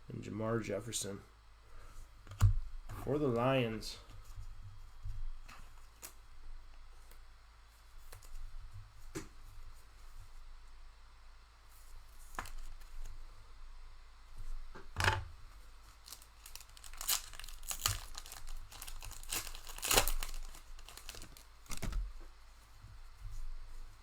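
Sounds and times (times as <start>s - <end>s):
wrapper tearing and crinkling: 15.8s - 22.1s.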